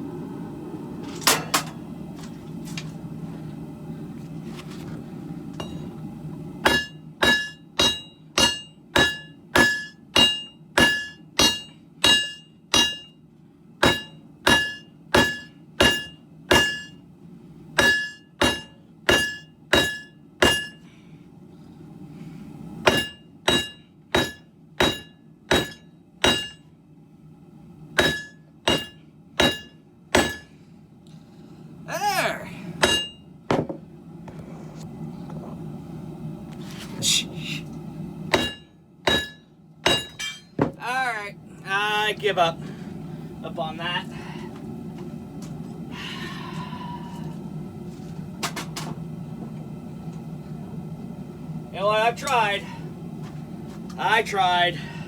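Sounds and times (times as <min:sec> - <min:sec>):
hammer striking anvil: 0:06.6 - 0:13.1, 0:13.8 - 0:17.0, 0:17.8 - 0:20.8, 0:22.9 - 0:26.6, 0:28.0 - 0:30.5, 0:32.8 - 0:33.7, 0:38.3 - 0:40.8.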